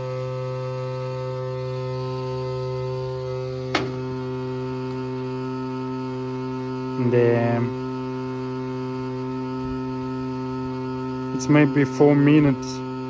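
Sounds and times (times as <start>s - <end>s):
loud electrical buzz: 0.0s - 13.0s
sharp click: 3.7s - 4.0s.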